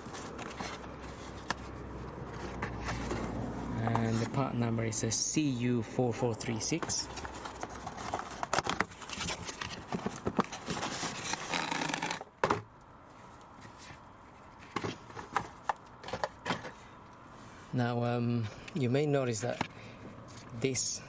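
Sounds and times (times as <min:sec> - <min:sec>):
packaging crinkling and rustling: 0:00.0 - 0:03.7, 0:07.0 - 0:12.2.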